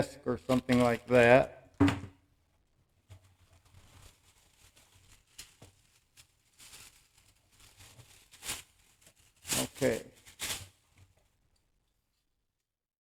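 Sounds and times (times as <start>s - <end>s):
sharp knock: 1.8s - 2.1s.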